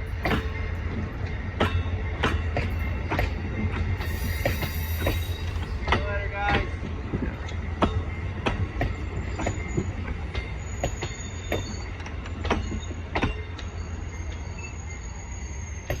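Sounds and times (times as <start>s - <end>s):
train wheels clicking over rail joints: 0.0s - 14.4s
low train rumble: 0.0s - 16.0s
high wheel squeal: 4.0s - 5.8s, 9.2s - 16.0s.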